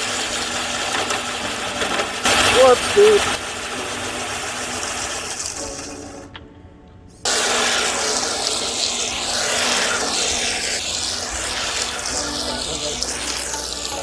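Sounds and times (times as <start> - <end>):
electric motor whine: 0.0 - 6.4, 7.3 - 14.0.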